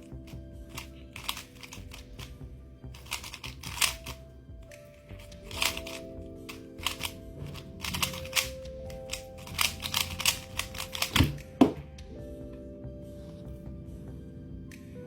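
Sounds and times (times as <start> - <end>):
background music: 0.0 - 15.0
puzzle cube layers clicking: 0.7 - 2.4, 3.0 - 11.6.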